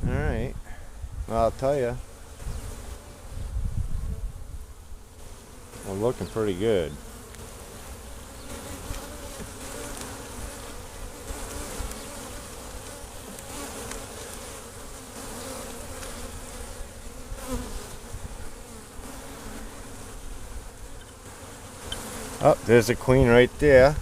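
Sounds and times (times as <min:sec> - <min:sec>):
honeybees buzzing: 0:00.0 - 0:24.0.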